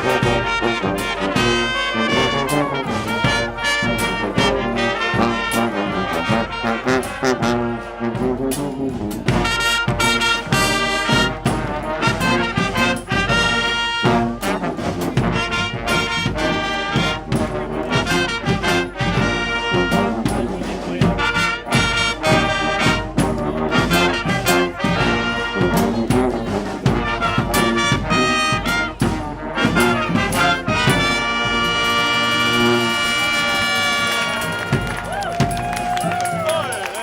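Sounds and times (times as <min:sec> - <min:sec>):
brass band with drums playing: 0:00.0 - 0:37.0.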